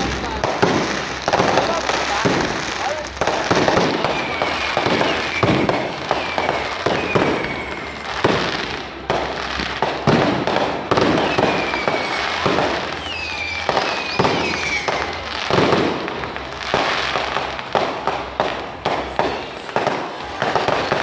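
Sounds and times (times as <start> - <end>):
fireworks bangs and crackles: 0.0 - 21.0
firework whistles sliding down: 3.6 - 8.8, 11.0 - 15.2.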